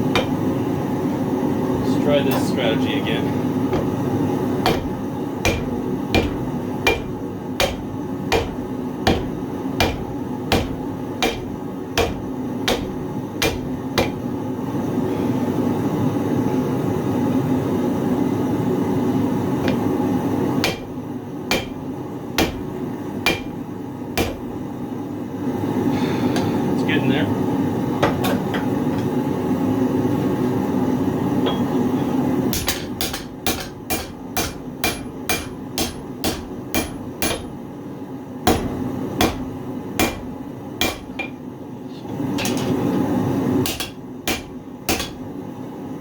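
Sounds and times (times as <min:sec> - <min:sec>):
steady rumble: 0:00.0 - 0:14.8
hammer striking steel on anvil: 0:00.1 - 0:00.4, 0:04.6 - 0:14.3, 0:20.6 - 0:20.9, 0:21.5 - 0:21.8, 0:22.4 - 0:23.6, 0:24.2 - 0:24.5, 0:32.5 - 0:37.6, 0:38.5 - 0:41.4, 0:43.6 - 0:45.2.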